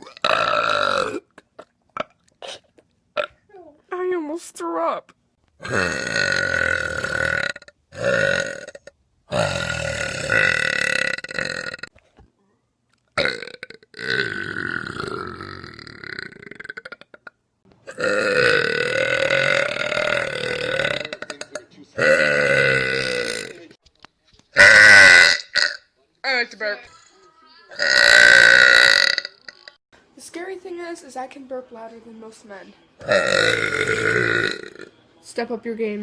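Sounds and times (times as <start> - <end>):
woman belching: 0.0 - 3.4, 5.6 - 11.9, 13.2 - 23.6, 24.6 - 25.8, 27.7 - 29.5, 33.0 - 34.9.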